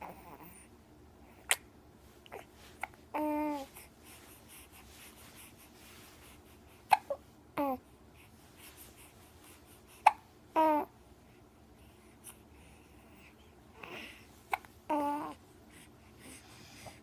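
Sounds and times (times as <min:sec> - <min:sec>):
baby hiccupping: 0:06.9 - 0:07.8, 0:10.0 - 0:10.9.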